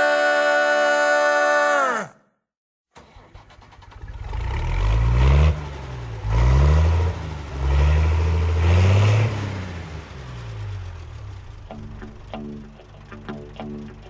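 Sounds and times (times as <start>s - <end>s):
diesel engine revving: 3.0s - 14.0s.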